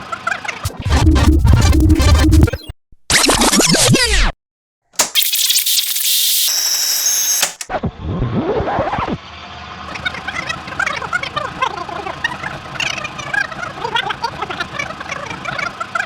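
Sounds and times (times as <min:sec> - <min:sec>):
pitch sweep: 0:00.6 - 0:04.2
sped-up tape rewind chatter: 0:00.6 - 0:04.3, 0:05.0 - 0:07.6.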